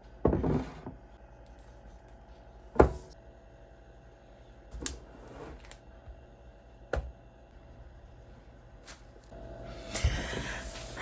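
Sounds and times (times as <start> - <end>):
kitchen items knocking and clunking: 2.7 - 3.2.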